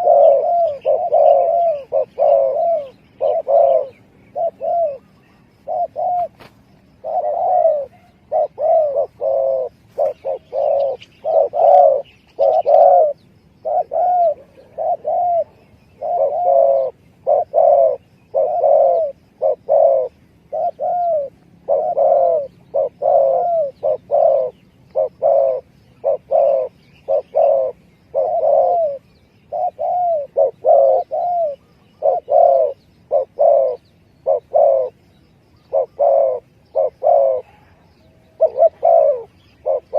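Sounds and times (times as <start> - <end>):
dove cooing: 0.0 - 39.9.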